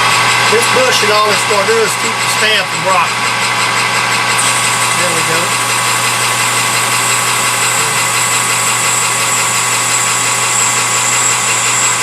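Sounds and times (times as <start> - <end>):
metal lathe humming with whine: 0.0 - 12.0.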